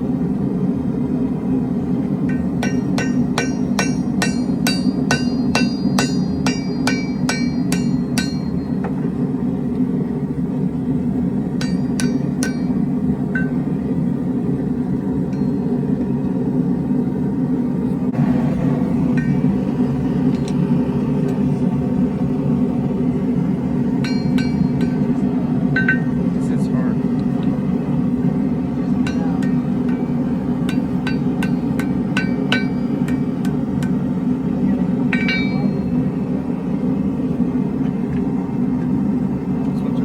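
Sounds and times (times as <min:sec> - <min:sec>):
steady low roar: 0:00.0 - 0:40.0
hammer striking steel on anvil: 0:02.2 - 0:09.0, 0:11.6 - 0:13.7, 0:15.3 - 0:15.8, 0:19.1 - 0:19.6, 0:24.0 - 0:26.2, 0:29.0 - 0:34.1, 0:35.1 - 0:36.0.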